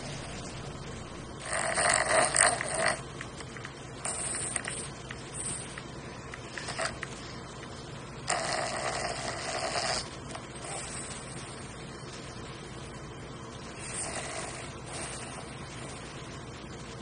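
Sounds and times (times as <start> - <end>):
dog snoring: 1.4 - 3.1, 4.0 - 5.8, 6.5 - 7.0, 8.2 - 11.6, 13.7 - 16.1.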